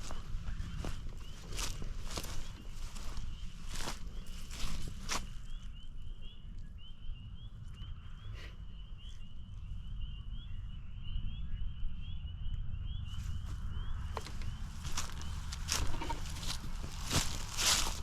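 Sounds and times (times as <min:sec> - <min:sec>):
constant low rumble: 0:00.0 - 0:18.0
spring peepers chorus: 0:00.0 - 0:18.0.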